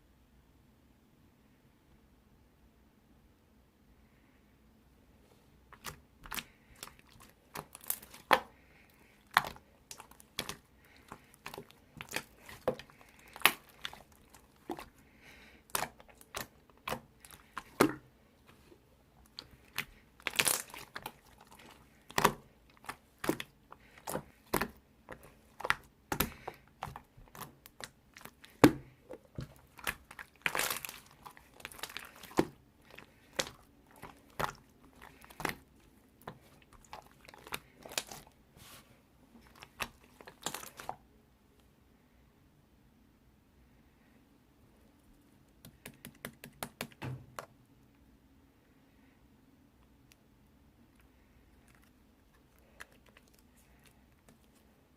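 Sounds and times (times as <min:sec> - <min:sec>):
slime squished by hand: 0:05.7 - 0:38.8, 0:39.4 - 0:41.0.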